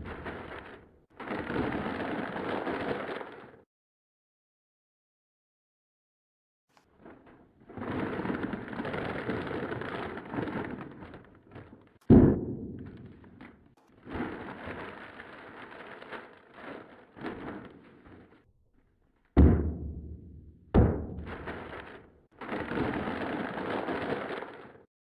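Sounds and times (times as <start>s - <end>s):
scattered pops: 0.0s - 0.9s
firework crackling and sizzling: 0.0s - 3.6s, 14.0s - 18.5s, 21.2s - 24.8s.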